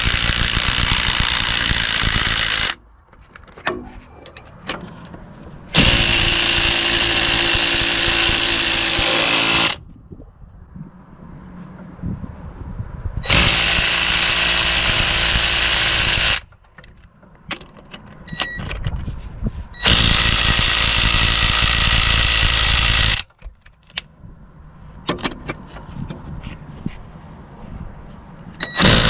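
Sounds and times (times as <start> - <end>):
cordless impact wrench running: 0.0 - 2.8, 5.7 - 9.8, 13.2 - 16.5, 19.8 - 23.3, 28.6 - 29.0
clicks and handling noise: 2.7 - 6.2, 16.4 - 20.0.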